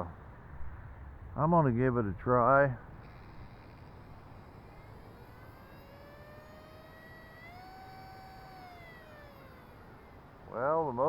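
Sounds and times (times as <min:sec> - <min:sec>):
electric motor whining: 0:02.8 - 0:11.0.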